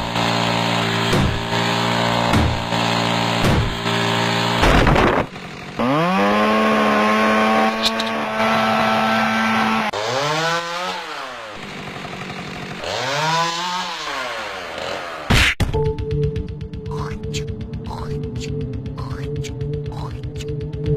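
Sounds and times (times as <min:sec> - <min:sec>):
chainsaw revving: 0:00.0 - 0:15.3.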